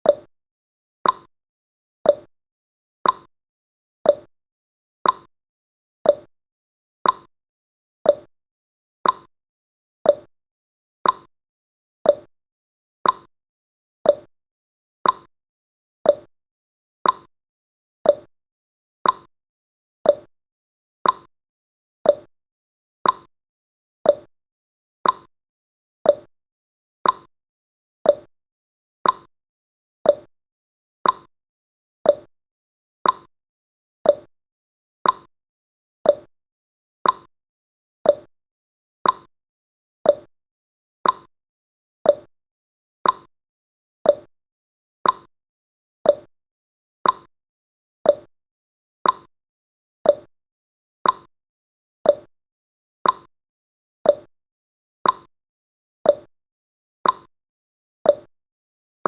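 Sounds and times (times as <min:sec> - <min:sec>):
timer tick-tock: 0:00.0 - 0:00.3, 0:01.0 - 0:01.3, 0:02.0 - 0:02.3, 0:03.0 - 0:03.3, 0:04.0 - 0:04.3, 0:05.0 - 0:05.3, 0:06.0 - 0:06.3, 0:07.0 - 0:07.3, 0:08.0 - 0:08.3, 0:09.0 - 0:09.3, 0:10.0 - 0:10.3, 0:11.0 - 0:11.3, 0:12.0 - 0:12.3, 0:13.0 - 0:13.3, 0:14.0 - 0:14.3, 0:15.0 - 0:15.3, 0:16.0 - 0:16.3, 0:17.0 - 0:17.3, 0:18.0 - 0:18.3, 0:19.0 - 0:19.3, 0:20.0 - 0:20.3, 0:21.0 - 0:21.3, 0:22.0 - 0:22.3, 0:23.0 - 0:23.3, 0:24.0 - 0:24.3, 0:25.0 - 0:25.3, 0:26.0 - 0:26.3, 0:27.0 - 0:27.3, 0:28.0 - 0:28.3, 0:29.0 - 0:29.3, 0:30.0 - 0:30.3, 0:31.0 - 0:31.3, 0:32.0 - 0:32.3, 0:33.0 - 0:33.3, 0:34.0 - 0:34.3, 0:35.0 - 0:35.3, 0:36.0 - 0:36.3, 0:37.0 - 0:37.3, 0:38.0 - 0:38.3, 0:39.0 - 0:39.3, 0:40.0 - 0:40.3, 0:41.0 - 0:41.3, 0:42.0 - 0:42.3, 0:43.0 - 0:43.3, 0:44.0 - 0:44.3, 0:45.0 - 0:45.3, 0:46.0 - 0:46.3, 0:47.0 - 0:47.3, 0:48.0 - 0:48.3, 0:49.0 - 0:49.3, 0:50.0 - 0:50.3, 0:51.0 - 0:51.3, 0:52.0 - 0:52.3, 0:53.0 - 0:53.3, 0:54.0 - 0:54.3, 0:55.0 - 0:55.3, 0:56.0 - 0:56.3, 0:57.0 - 0:57.3, 0:58.1 - 0:58.3.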